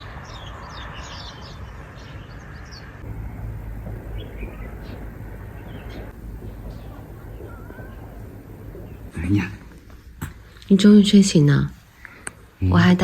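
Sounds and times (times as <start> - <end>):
small birds chirping: 0.2 - 13.0
low rumble: 3.0 - 11.9.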